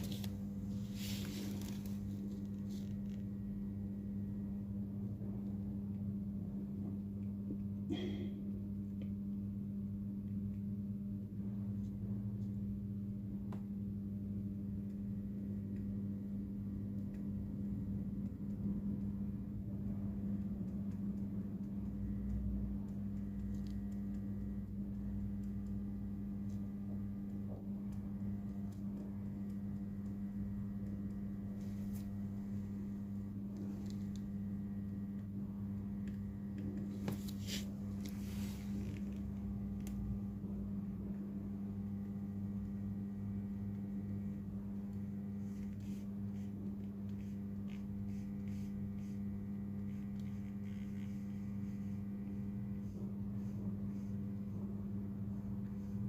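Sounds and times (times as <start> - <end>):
low electrical hum: 0.0 - 56.0.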